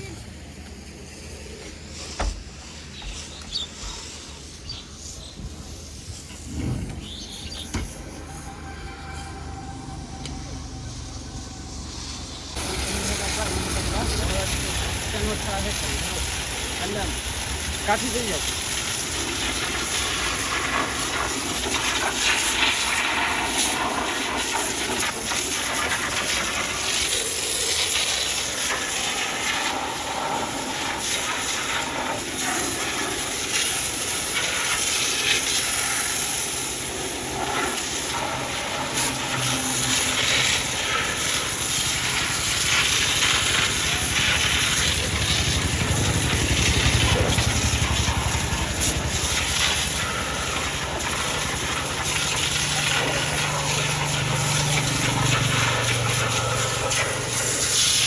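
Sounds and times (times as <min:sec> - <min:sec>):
water jet spraying: 0:11.9 - 0:58.0
low rumble: 0:42.1 - 0:52.1.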